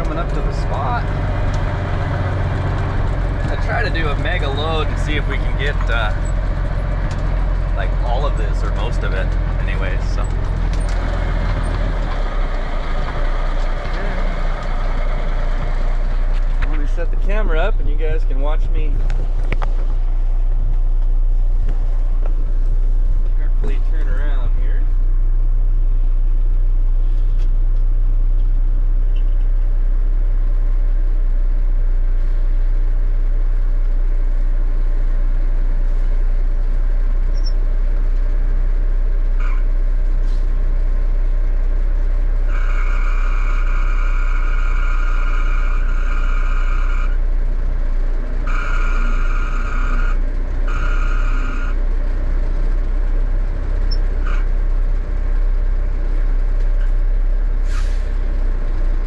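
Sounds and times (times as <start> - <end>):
diesel truck engine running: 0.0 - 59.0
high steady squeal: 42.5 - 47.3, 48.4 - 51.8.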